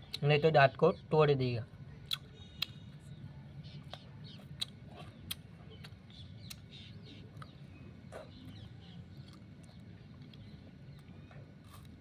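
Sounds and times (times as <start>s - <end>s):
sugarcane cracking when bitten: 2.1s - 2.7s.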